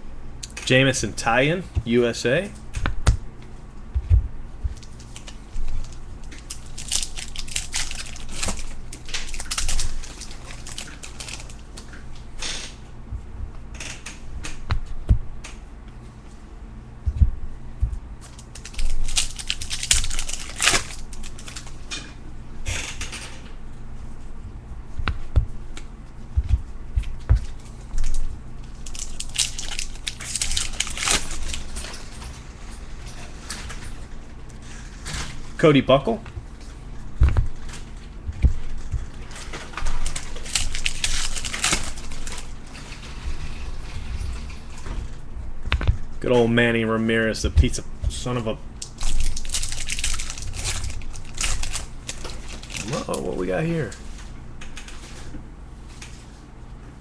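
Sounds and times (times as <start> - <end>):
card pack wrappers crinkling and tearing: 4.8 - 12.0, 18.2 - 22.0, 27.5 - 32.2, 39.2 - 43.2, 48.8 - 54.0.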